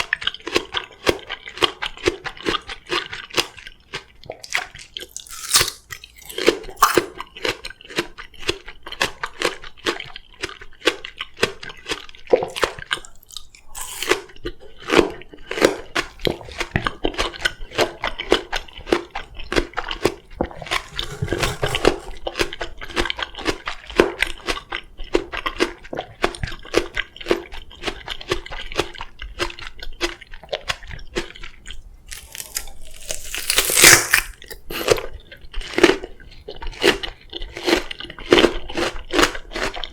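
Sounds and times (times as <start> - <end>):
crunchy melon chewing: 0.0 - 39.9
wet squishing: 29.7 - 35.0.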